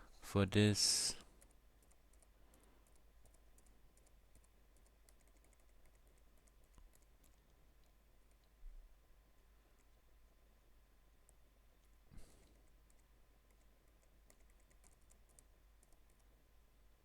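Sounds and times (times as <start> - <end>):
computer keyboard clicks: 1.4 - 7.4, 12.6 - 16.3.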